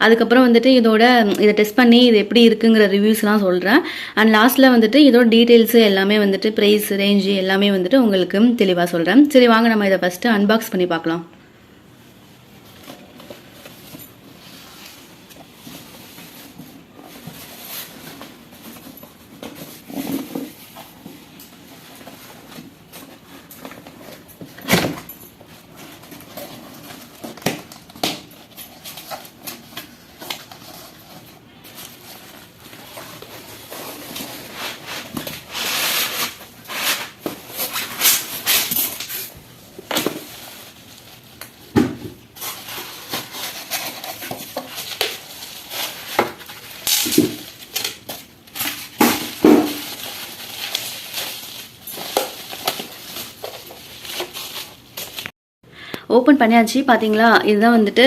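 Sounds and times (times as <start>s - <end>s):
packing tearing and rustling: 12.6s - 55.3s.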